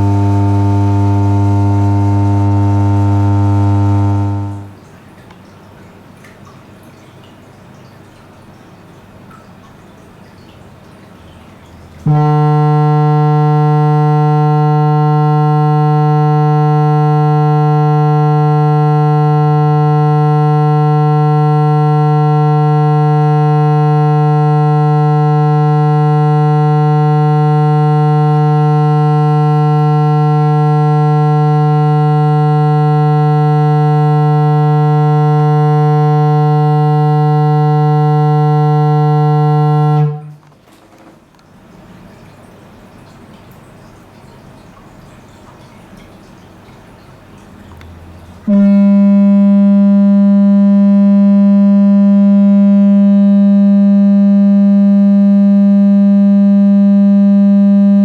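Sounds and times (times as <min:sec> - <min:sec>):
low buzzy electronic test tone: 0:00.0 - 0:04.9, 0:12.0 - 0:40.4, 0:47.8 - 0:58.0.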